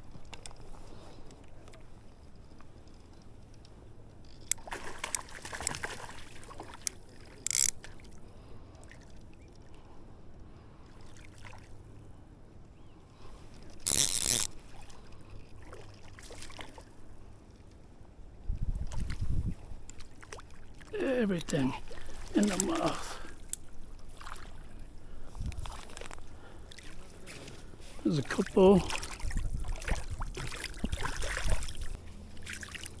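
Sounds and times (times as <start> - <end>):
water splashing: 4.6 - 7.6, 20.0 - 24.8, 25.6 - 33.0
flowing water: 18.8 - 33.0.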